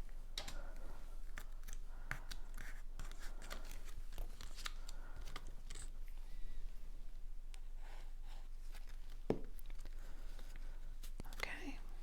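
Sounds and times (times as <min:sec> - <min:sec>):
paper rustling: 0:02.3 - 0:05.9.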